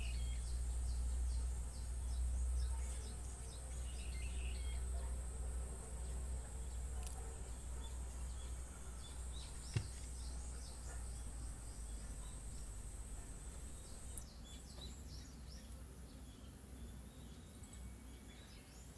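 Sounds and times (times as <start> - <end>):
high insect drone: 0.0 - 14.2
small birds chirping: 0.0 - 18.9.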